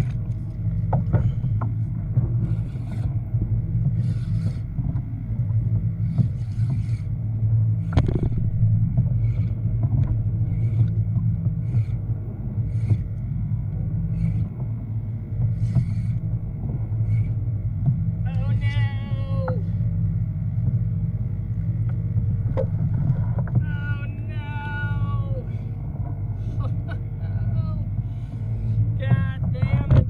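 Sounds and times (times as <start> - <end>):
water splashing against kayak: 0.0 - 19.8
low rumble of water and wind: 0.0 - 30.0.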